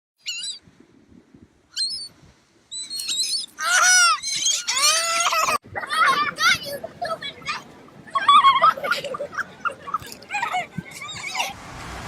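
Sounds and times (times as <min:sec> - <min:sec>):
seagulls calling: 0:02.7 - 0:06.2.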